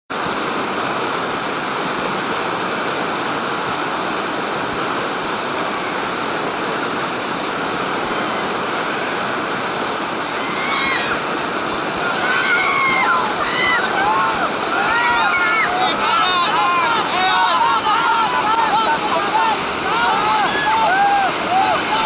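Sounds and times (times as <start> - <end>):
whitewater rushing through rapid: 0.1 - 22.0.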